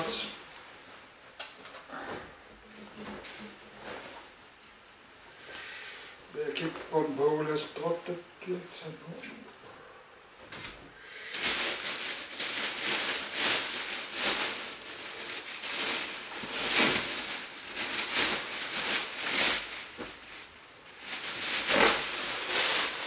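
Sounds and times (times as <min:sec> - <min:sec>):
clothes rustling: 0:10.4 - 0:23.0.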